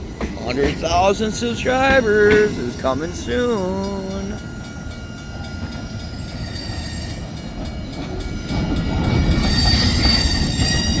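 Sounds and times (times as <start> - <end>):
freight train rumble: 0.0 - 11.0
train wheels squealing: 0.0 - 11.0.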